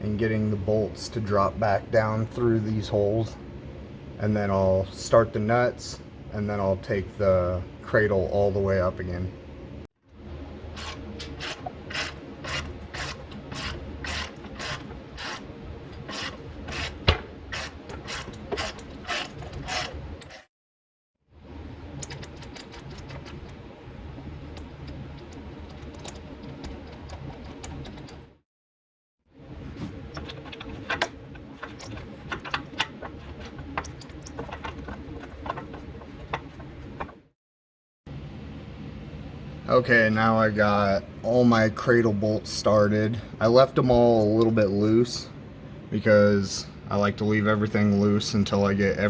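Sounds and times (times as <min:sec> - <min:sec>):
steady low hum: 0:00.0 - 0:20.4, 0:21.4 - 0:28.3, 0:38.1 - 0:49.0
ratchet rasping strokes: 0:10.8 - 0:20.4.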